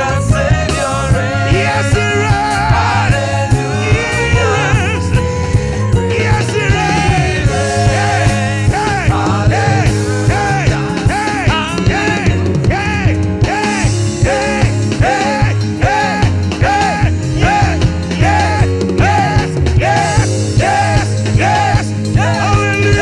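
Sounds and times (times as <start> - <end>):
heavy bass: 0.0 - 23.0
steady drum beat: 0.0 - 23.0
worship band music: 0.0 - 23.0.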